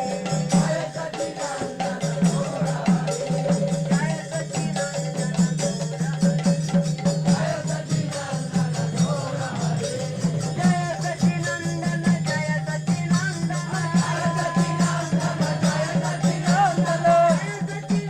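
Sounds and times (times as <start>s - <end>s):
drum beating: 0.0s - 18.0s
hand cymbals: 0.0s - 18.0s
group of voices chanting: 7.4s - 11.0s, 13.6s - 17.7s.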